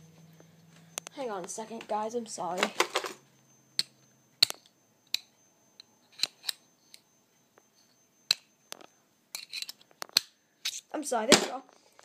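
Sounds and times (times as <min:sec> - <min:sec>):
faint high-pitched tone: 0:00.0 - 0:09.6
clicks of hands handling small parts: 0:03.8 - 0:05.3, 0:08.3 - 0:10.8.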